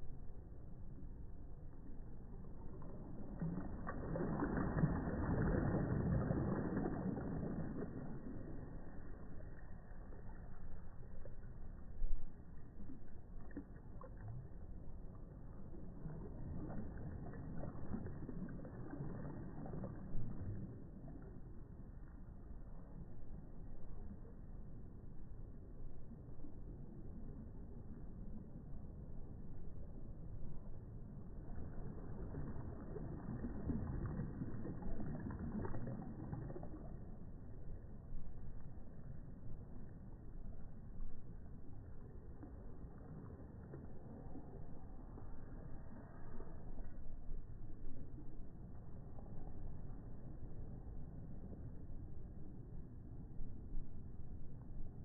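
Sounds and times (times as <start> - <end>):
small waves lapping: 1.8 - 25.0, 30.6 - 53.2
little water splashes: 2.3 - 24.4, 31.1 - 51.6
surf fizzing wash: 3.0 - 9.6.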